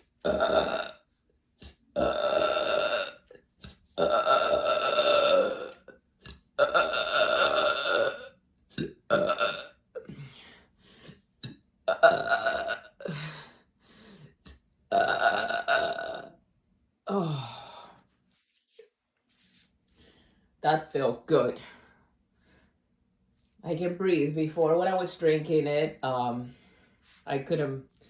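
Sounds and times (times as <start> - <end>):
woman belching: 0.2 - 1.0, 2.0 - 3.4, 4.0 - 10.2, 11.4 - 13.2, 14.9 - 16.3.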